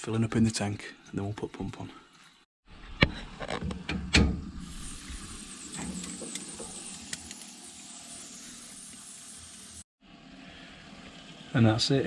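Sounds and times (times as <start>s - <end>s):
heating pump humming and hissing: 4.6s - 12.0s.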